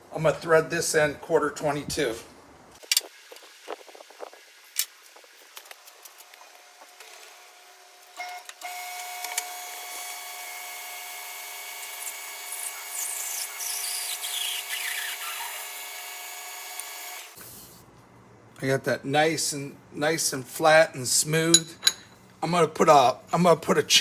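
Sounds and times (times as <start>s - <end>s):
high squeal of cutting metal: 12.6s - 15.7s.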